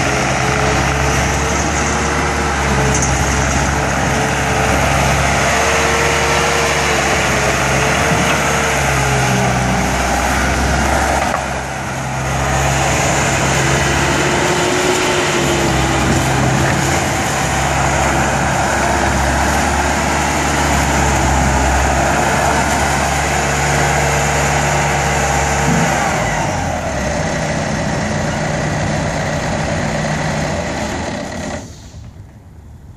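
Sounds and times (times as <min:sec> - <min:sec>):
diesel engine running: 0:00.0 - 0:32.1.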